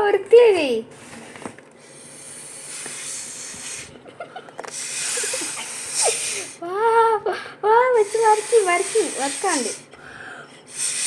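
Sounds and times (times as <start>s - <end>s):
breathy blows through a pen: 0.9s - 4.0s, 4.7s - 6.6s, 8.0s - 11.0s.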